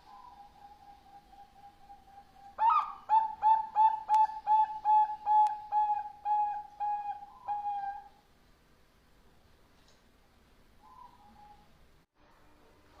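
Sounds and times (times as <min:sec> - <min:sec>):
dove cooing: 0:00.0 - 0:08.2.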